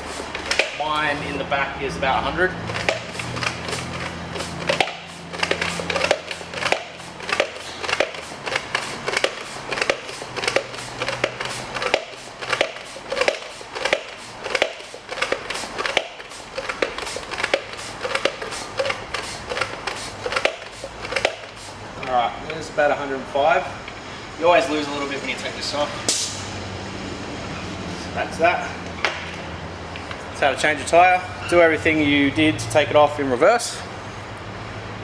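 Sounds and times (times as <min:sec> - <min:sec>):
bicycle pump strokes: 0:00.0 - 0:01.4, 0:02.6 - 0:22.2.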